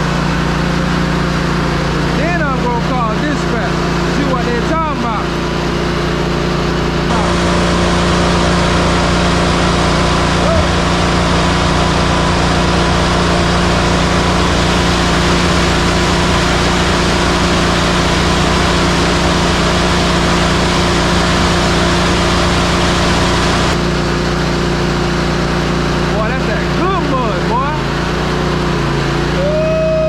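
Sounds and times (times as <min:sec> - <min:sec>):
diesel truck engine running: 0:05.5 - 0:23.9
broad hiss: 0:10.1 - 0:23.8.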